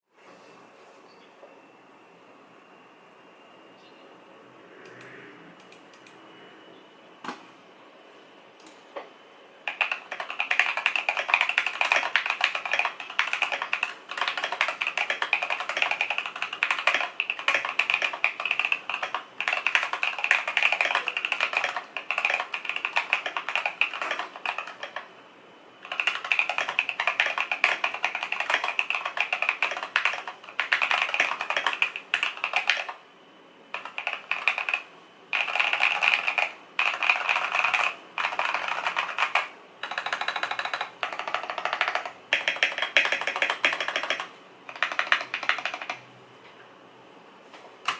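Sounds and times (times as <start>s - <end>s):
mechanical keyboard typing: 9.7s - 25.1s, 25.8s - 33.0s, 33.7s - 46.1s.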